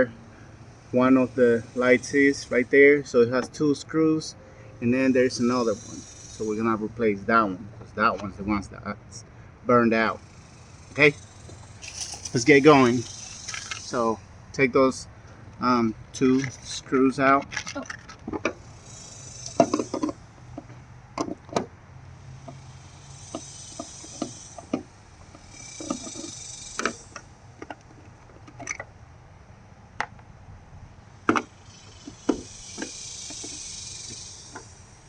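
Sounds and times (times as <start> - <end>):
screwdriver clicking on screws: 11.8 - 12.6
screwdriver scraping: 11.8 - 13.9, 16.3 - 16.8, 17.5 - 18.2.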